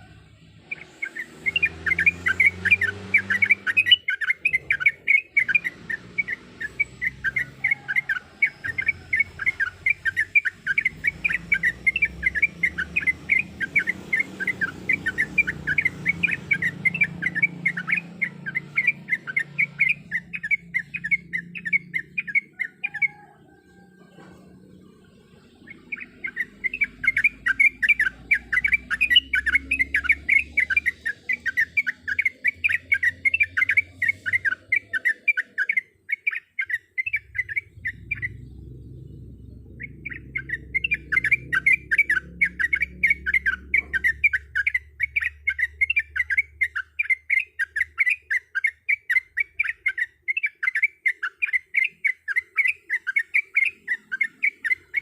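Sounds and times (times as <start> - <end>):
bird singing chattering notes: 0.0 - 55.0
low rumble: 37.2 - 44.2.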